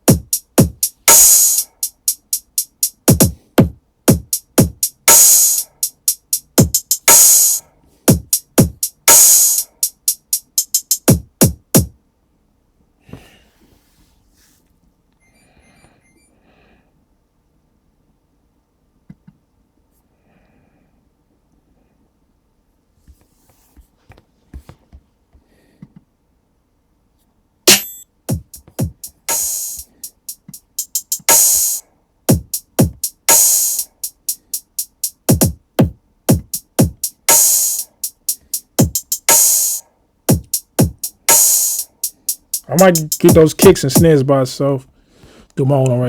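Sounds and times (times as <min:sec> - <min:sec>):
drum machine hip-hop loop: 0:00.0 - 0:11.9, 0:27.7 - 0:44.3.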